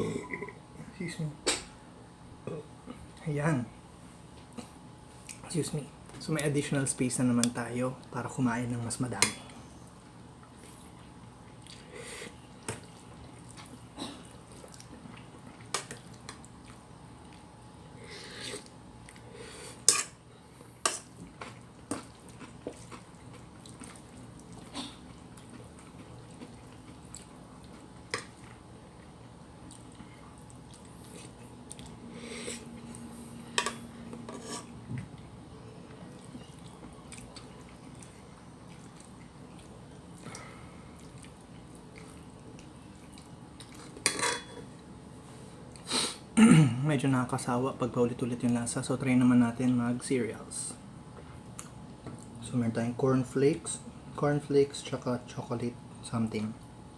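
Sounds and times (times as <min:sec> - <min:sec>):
electric fan humming: 0:00.0 - 0:56.9
cutlery clinking on dishes: 0:44.0 - 0:44.6.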